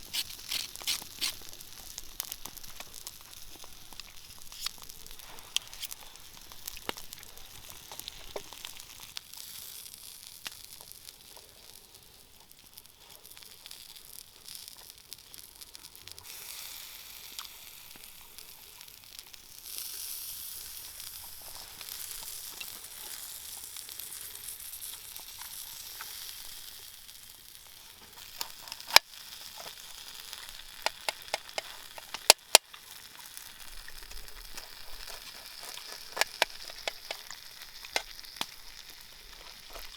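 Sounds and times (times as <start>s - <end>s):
meat sizzling: 0.0s - 39.9s
sharp clicks: 30.8s - 32.6s, 35.7s - 37.2s.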